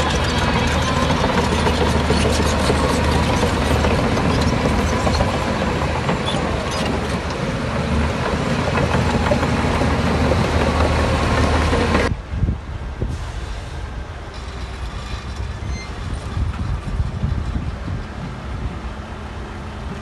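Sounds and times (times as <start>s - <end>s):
diesel machinery engine drone: 0.0s - 20.0s.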